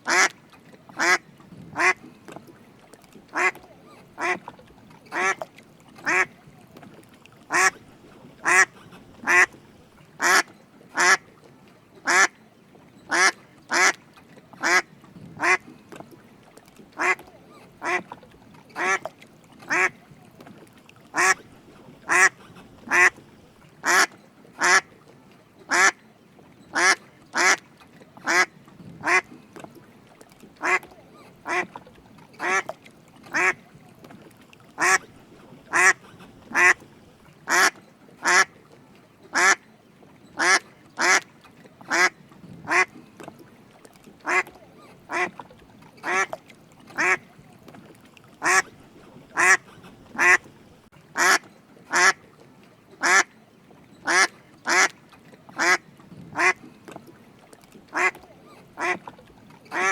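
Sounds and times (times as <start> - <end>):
drake mallard quacking: 0.1 - 0.4, 1.0 - 2.0, 3.3 - 3.6, 4.2 - 4.5, 5.1 - 5.4, 6.0 - 6.3, 7.5 - 7.8, 8.4 - 9.6, 10.2 - 11.2, 12.0 - 12.3, 13.1 - 14.0, 14.6 - 15.6, 17.0 - 18.1, 18.8 - 19.1, 19.7 - 20.0, 21.1 - 23.2, 23.8 - 24.9, 25.7 - 26.0, 26.7 - 27.6, 28.2 - 29.3, 30.6 - 31.8, 32.4 - 32.7, 33.3 - 33.6, 34.8 - 35.1, 35.7 - 36.9, 37.5 - 38.5, 39.3 - 39.6, 40.4 - 41.3, 41.9 - 42.9, 44.2 - 44.5, 45.1 - 45.4, 46.0 - 47.2, 48.4 - 50.5, 51.2 - 52.2, 53.0 - 53.3, 54.0 - 54.9, 55.6 - 55.8, 56.4 - 56.6, 57.9 - 58.2, 58.8 - 59.1.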